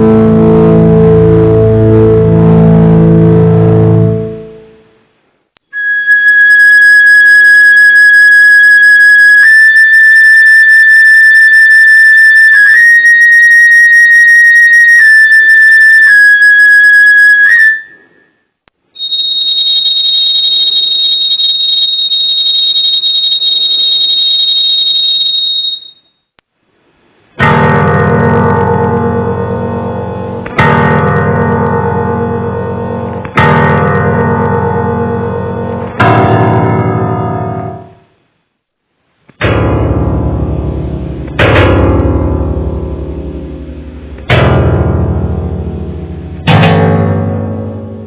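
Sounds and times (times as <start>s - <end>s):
high piercing note: 5.7s - 18.4s, 19.0s - 26.1s
loud whistle-like tone: 5.7s - 26.3s.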